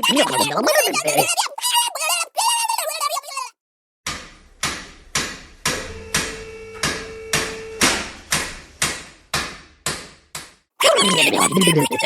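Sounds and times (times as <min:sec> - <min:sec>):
hammer blows: 0:04.1 - 0:10.1.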